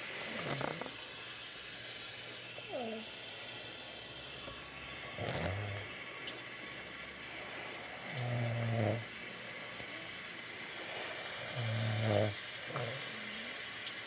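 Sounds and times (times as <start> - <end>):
man snoring: 0.2 - 1.0, 5.2 - 5.9, 8.1 - 9.1, 11.4 - 13.5.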